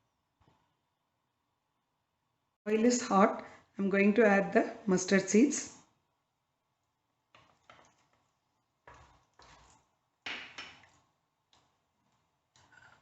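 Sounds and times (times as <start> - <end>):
seeds popping in hot oil: 7.2 - 13.0.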